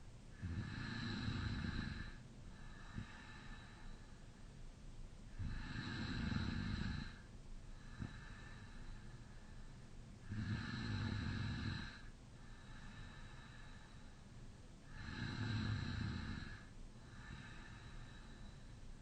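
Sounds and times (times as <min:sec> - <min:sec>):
quiet breathing: 0:00.0 - 0:19.0
man snoring: 0:00.4 - 0:02.2, 0:05.4 - 0:07.2, 0:10.3 - 0:12.1, 0:14.9 - 0:17.9.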